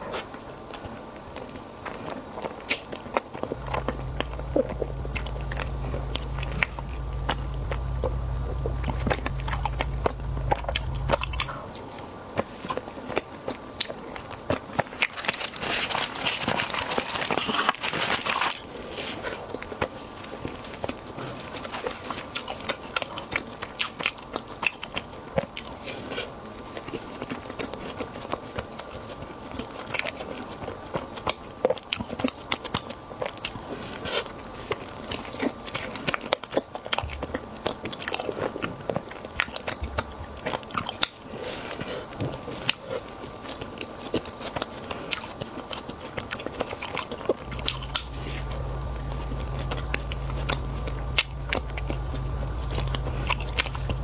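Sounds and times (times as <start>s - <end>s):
close eating and crunching: 0.0s - 54.0s
steady low hum: 3.3s - 13.2s, 14.1s - 24.4s, 46.0s - 54.0s.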